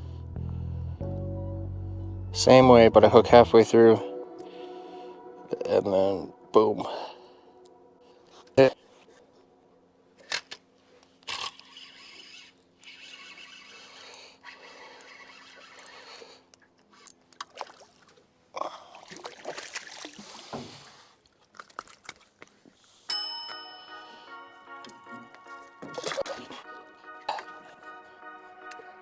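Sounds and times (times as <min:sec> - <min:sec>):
background music: 0:00.0 - 0:10.0, 0:23.1 - 0:29.0.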